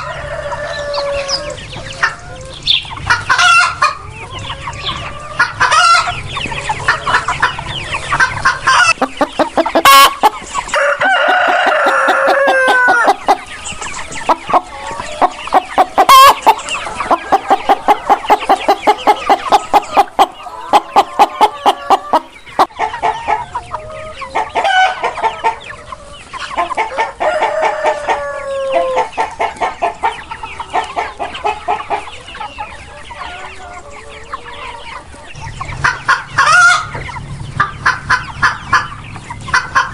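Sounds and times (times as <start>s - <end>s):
rooster crowing: 0.0s - 1.6s, 9.8s - 22.4s, 26.9s - 29.1s
chickens clucking: 0.0s - 39.9s.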